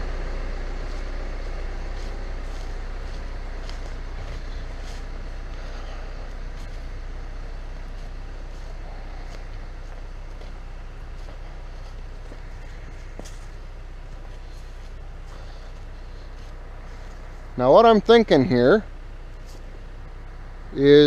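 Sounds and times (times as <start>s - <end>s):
diesel engine idling: 0.0s - 21.0s.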